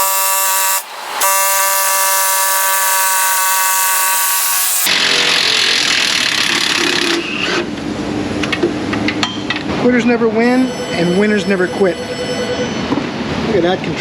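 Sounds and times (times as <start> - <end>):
impact wrench hammering: 0.0 - 4.9.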